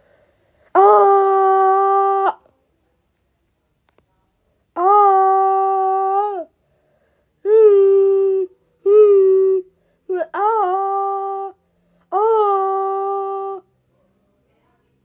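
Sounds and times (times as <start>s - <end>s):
high voice humming a note: 0.8s - 2.4s, 4.8s - 6.5s, 7.5s - 13.6s.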